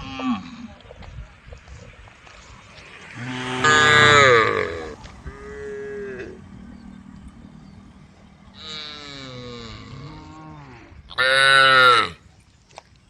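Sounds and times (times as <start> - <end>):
cows mooing: 3.0 - 12.2.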